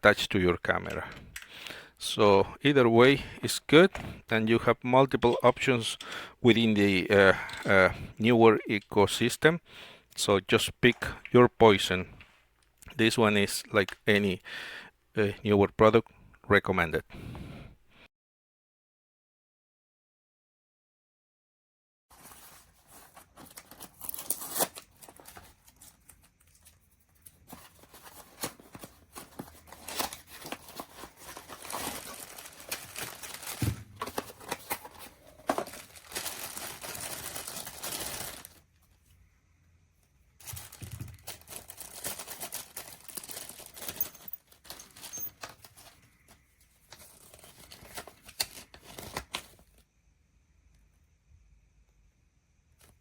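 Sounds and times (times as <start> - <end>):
crinkling and rustling handling noise: 3.0 - 9.2, 22.1 - 39.3, 40.3 - 49.8.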